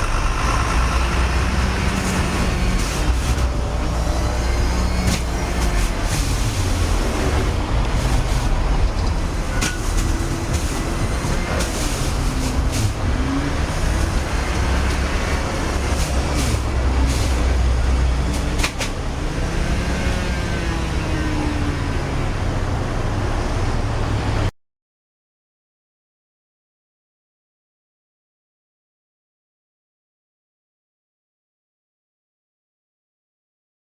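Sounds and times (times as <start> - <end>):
bus and truck engines rumbling: 0.0 - 24.5
car horns: 9.4 - 12.9.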